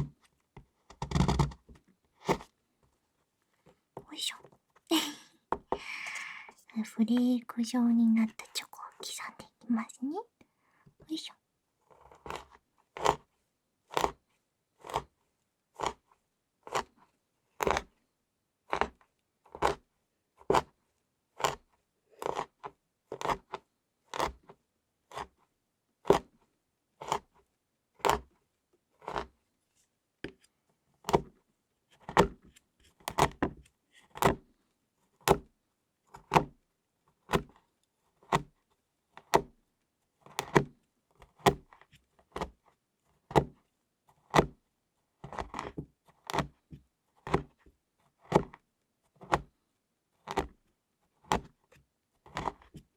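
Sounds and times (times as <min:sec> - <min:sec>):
knife chopping chocolate: 0:00.0 - 0:00.2, 0:14.8 - 0:15.2, 0:15.8 - 0:16.0, 0:16.7 - 0:16.9, 0:17.6 - 0:17.9, 0:22.2 - 0:24.5, 0:27.0 - 0:27.3, 0:28.0 - 0:28.3, 0:29.0 - 0:29.3, 0:31.0 - 0:31.4, 0:32.0 - 0:32.4, 0:33.0 - 0:34.5, 0:35.2 - 0:35.5, 0:36.2 - 0:36.6, 0:37.2 - 0:37.6, 0:38.2 - 0:38.6, 0:39.2 - 0:39.6, 0:40.3 - 0:42.6, 0:43.2 - 0:43.6, 0:44.2 - 0:44.6, 0:45.2 - 0:47.6, 0:48.2 - 0:48.6, 0:49.2 - 0:49.5, 0:51.2 - 0:51.6, 0:52.3 - 0:52.9.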